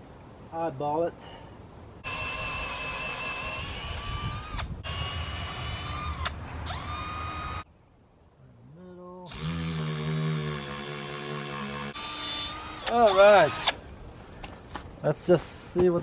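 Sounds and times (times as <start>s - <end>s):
power drill whining: 2.0s - 7.7s, 9.3s - 13.8s.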